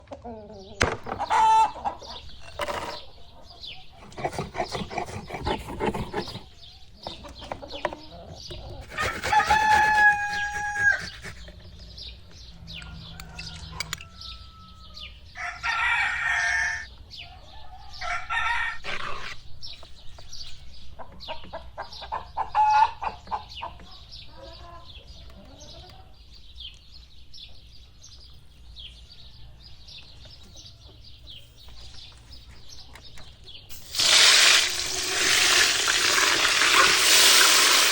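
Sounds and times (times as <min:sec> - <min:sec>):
chickens clucking: 0:00.0 - 0:26.8, 0:30.0 - 0:37.9
rooster crowing: 0:09.0 - 0:11.2, 0:12.8 - 0:18.9.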